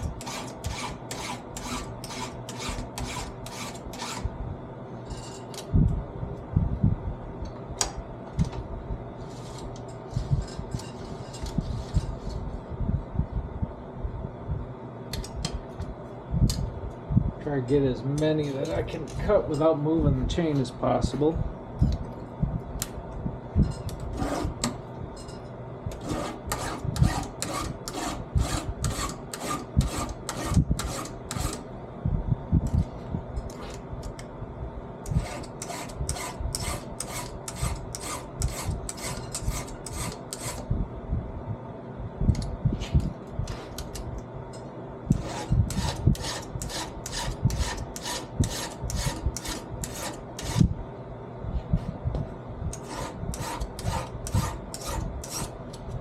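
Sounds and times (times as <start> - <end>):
hand file rasping on chain: 0.0 - 4.3, 26.0 - 31.6, 35.1 - 40.6, 45.1 - 50.7, 52.8 - 55.6.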